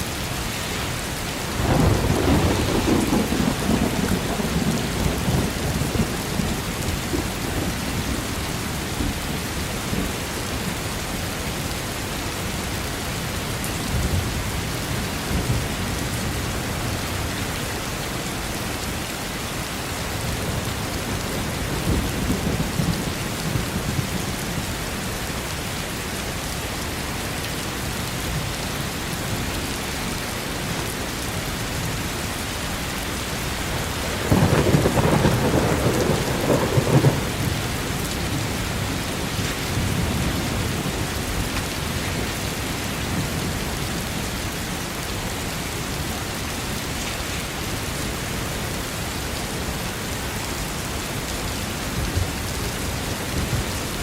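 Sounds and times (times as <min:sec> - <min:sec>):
heavy rain falling: 0:00.0 - 0:54.0
thunder rumbling: 0:01.4 - 0:08.4, 0:20.3 - 0:25.0, 0:33.5 - 0:44.4.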